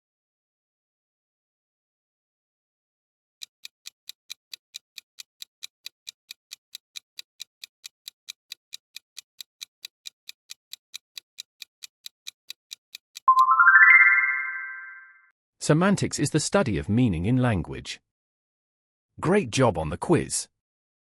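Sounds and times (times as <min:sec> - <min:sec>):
countdown timer ticking: 0:08.3 - 0:15.0.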